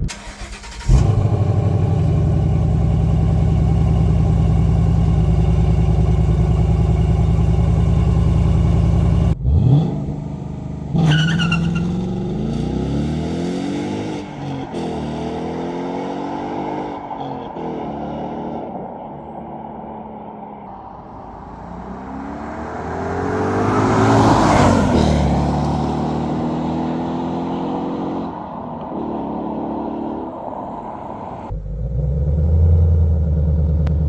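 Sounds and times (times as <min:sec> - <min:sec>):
car engine idling: 0:00.0 - 0:12.2, 0:20.6 - 0:26.2, 0:30.4 - 0:34.0
engine revving: 0:00.0 - 0:18.7, 0:20.7 - 0:30.4, 0:31.0 - 0:34.0
car pulling away: 0:00.0 - 0:19.4, 0:20.0 - 0:34.0.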